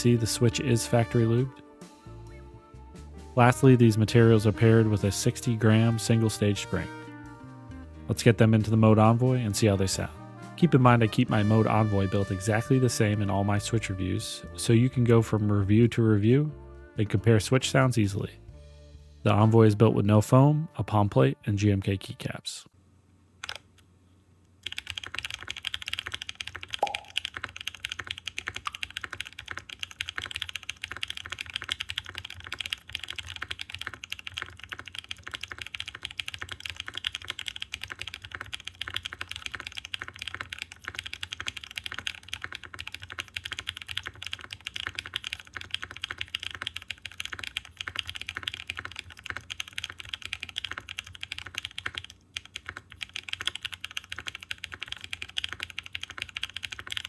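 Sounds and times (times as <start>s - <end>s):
mechanical keyboard typing: 23.4s - 23.6s, 24.6s - 57.0s.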